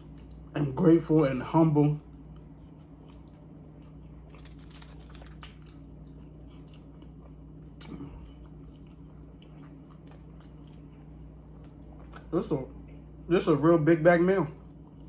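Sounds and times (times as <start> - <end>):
chewing and biting: 0.0 - 0.6, 1.9 - 13.0.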